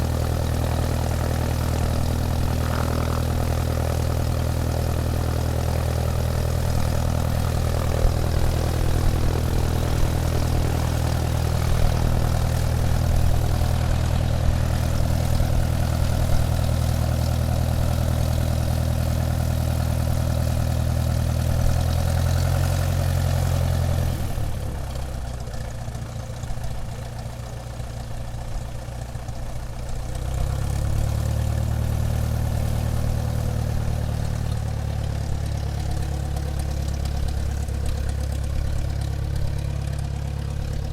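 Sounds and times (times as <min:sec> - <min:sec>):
airplane engine droning: 0:00.0 - 0:21.8.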